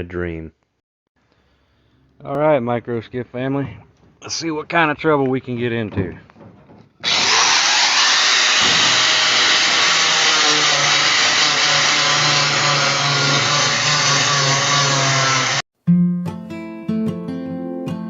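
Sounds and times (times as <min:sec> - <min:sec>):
electric power tool whirring: 0:07.0 - 0:15.6.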